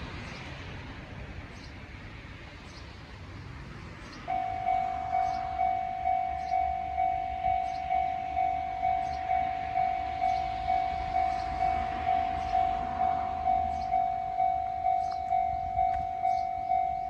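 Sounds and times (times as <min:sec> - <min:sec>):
level-crossing warning bell ringing: 0:04.3 - 0:17.0.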